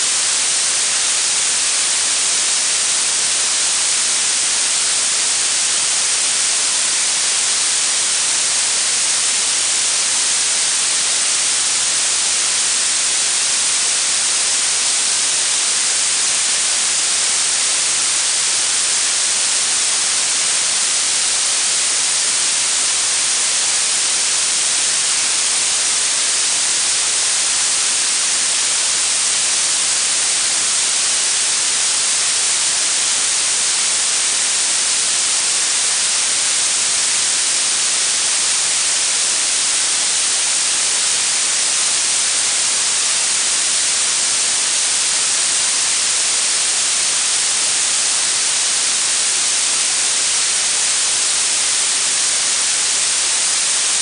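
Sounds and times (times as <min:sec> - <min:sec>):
high-pitched hiss: 0:00.0 - 0:54.0.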